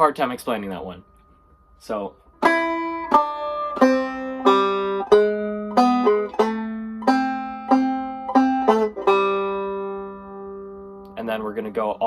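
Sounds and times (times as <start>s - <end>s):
banjo picking slow melody: 2.3s - 11.4s.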